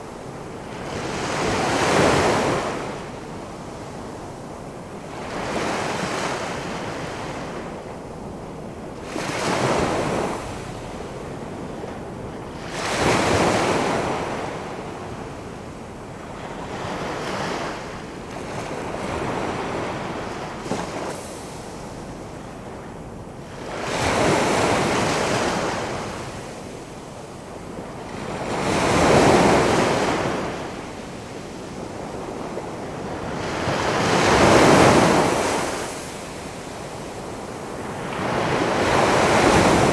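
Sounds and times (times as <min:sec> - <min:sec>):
ocean waves crashing: 0:37.8 - 0:39.9.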